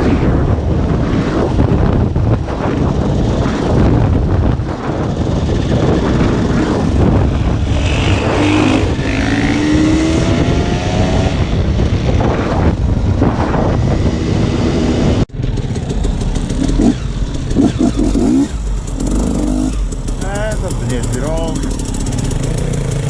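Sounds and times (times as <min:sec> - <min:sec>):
dirt bike engine revving: 0:05.6 - 0:12.7, 0:13.5 - 0:23.0.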